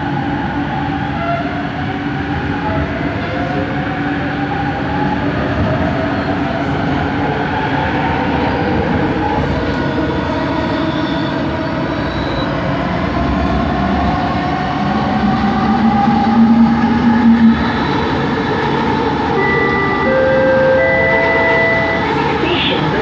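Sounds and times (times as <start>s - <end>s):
metro train motor whine: 0.0s - 23.0s
train running noise: 0.0s - 23.0s
low hum: 13.2s - 19.2s.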